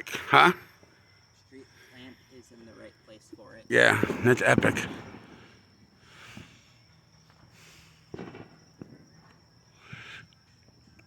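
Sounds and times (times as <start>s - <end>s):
distant fireworks hissing: 0.0s - 11.0s
fireworks popping: 3.7s - 10.1s.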